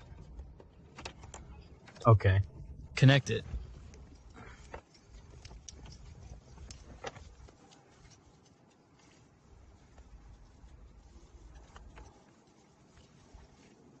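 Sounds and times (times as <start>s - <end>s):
rustling: 3.4s - 14.0s.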